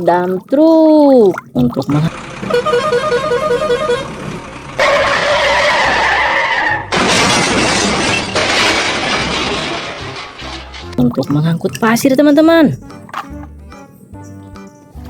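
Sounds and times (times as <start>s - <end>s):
noisy crash with held tone: 6.8s - 11.0s.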